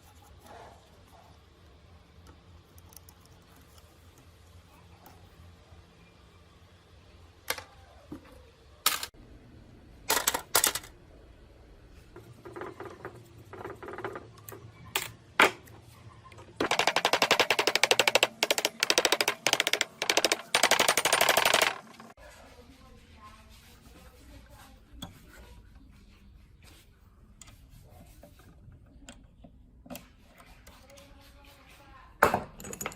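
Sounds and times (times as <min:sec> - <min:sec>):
rapid hammering rattle: 0:16.6 - 0:22.2.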